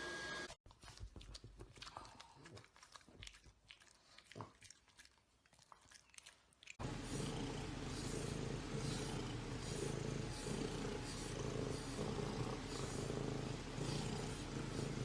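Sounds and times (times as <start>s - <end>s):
cat purring: 6.8s - 15.0s.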